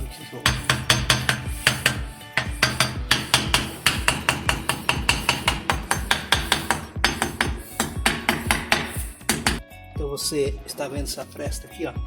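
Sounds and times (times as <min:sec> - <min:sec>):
hammer tapping brick: 0:00.4 - 0:09.6.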